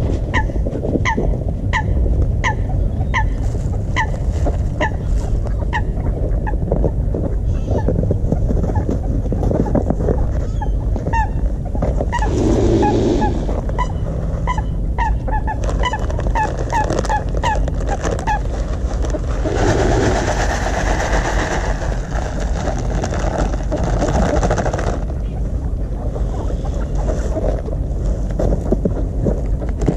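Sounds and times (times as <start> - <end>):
wind rumble on microphone: 0.0 - 29.9
rushing noise: 12.1 - 13.7, 19.2 - 22.8.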